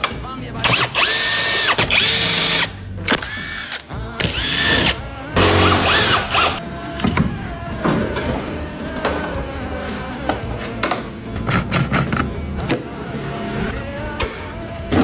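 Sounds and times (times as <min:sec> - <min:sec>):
tool handling: 0:00.0 - 0:09.3
power drill spinning: 0:00.6 - 0:06.6.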